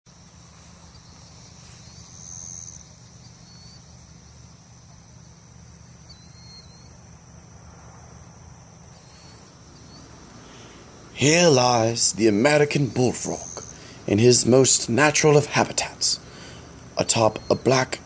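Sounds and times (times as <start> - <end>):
insects trilling high-pitched: 0.1 - 18.0
steady low rumble: 7.2 - 17.4.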